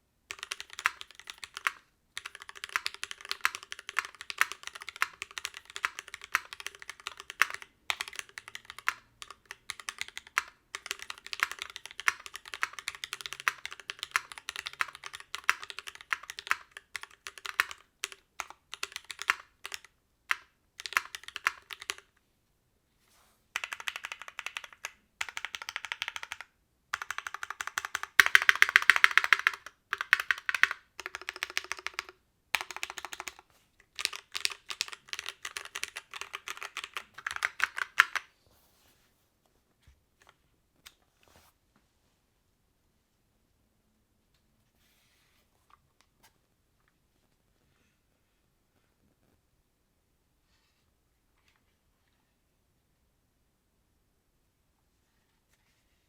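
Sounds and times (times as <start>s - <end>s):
mechanical keyboard typing: 0.3s - 22.1s, 23.6s - 38.3s.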